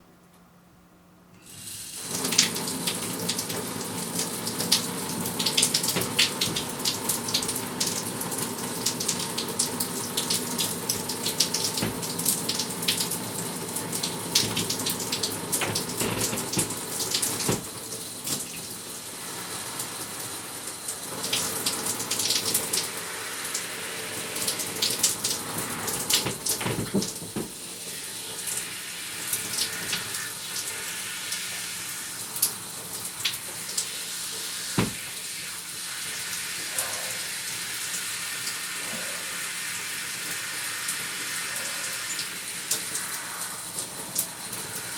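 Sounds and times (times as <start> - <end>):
shower water spraying: 1.4 - 44.9.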